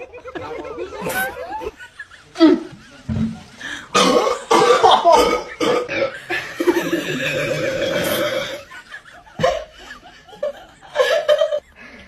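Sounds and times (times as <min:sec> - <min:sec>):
person burping: 0:03.9 - 0:06.2, 0:07.0 - 0:08.7.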